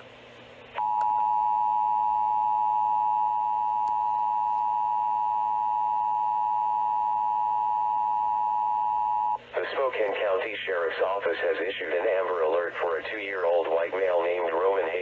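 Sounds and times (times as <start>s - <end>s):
two-tone alarm: 0.8s - 9.4s.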